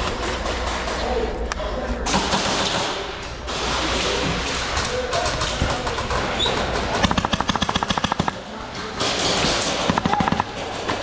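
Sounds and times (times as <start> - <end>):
airsoft guns firing full auto: 2.1 - 3.0, 5.2 - 11.0.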